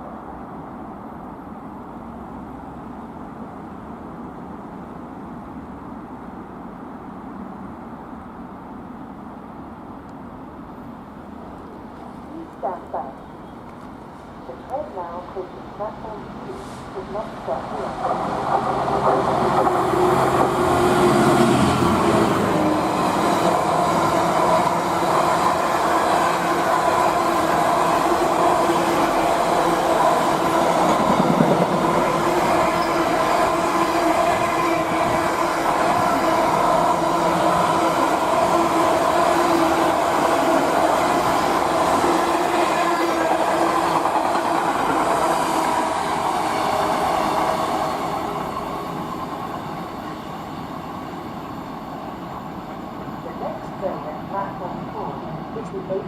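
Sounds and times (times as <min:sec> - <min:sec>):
train wheels rumbling on rails: 0:11.5 - 0:56.0
train clattering: 0:15.8 - 0:39.0, 0:42.9 - 0:51.9.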